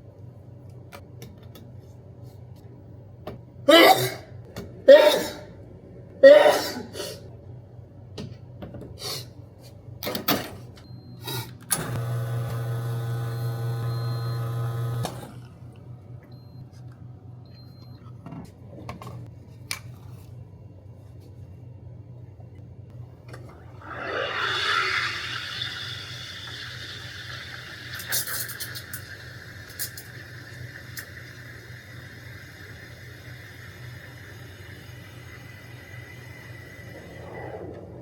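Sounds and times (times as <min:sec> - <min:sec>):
person sneezing: 0:03.7 - 0:05.6, 0:06.2 - 0:07.3
small electric motor humming: 0:11.9 - 0:15.2.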